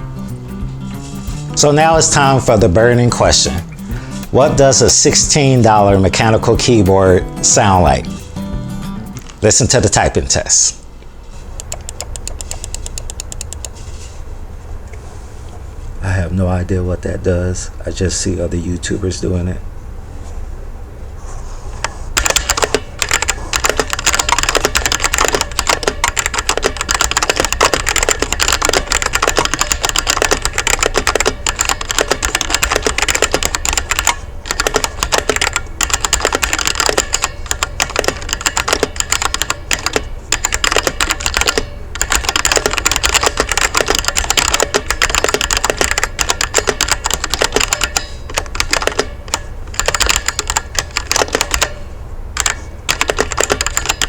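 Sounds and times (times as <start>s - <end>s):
mechanical keyboard typing: 0.0s - 8.2s, 11.6s - 13.8s, 22.2s - 51.8s, 52.4s - 54.0s.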